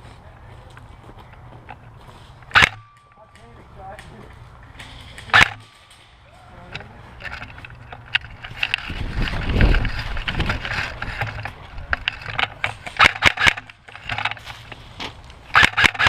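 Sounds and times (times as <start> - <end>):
rustling movement noise: 0.0 - 16.0
airsoft gun firing: 2.5 - 2.9, 5.2 - 5.9, 13.0 - 13.7, 15.5 - 16.0.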